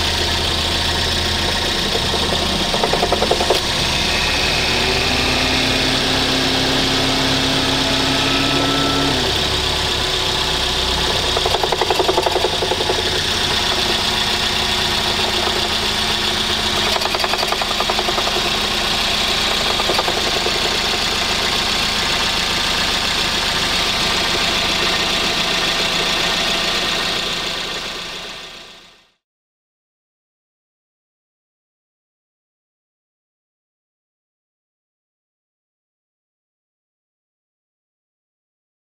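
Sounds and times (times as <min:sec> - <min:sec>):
fast clattering rattle: 0:00.0 - 0:04.0, 0:09.8 - 0:27.9
car engine running: 0:00.0 - 0:28.9.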